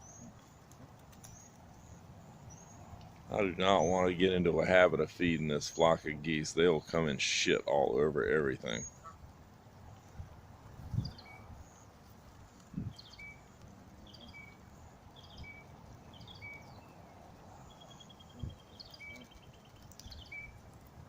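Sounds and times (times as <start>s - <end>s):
small bird chirping: 10.9s - 20.6s
rapid bird trill: 12.8s - 20.6s.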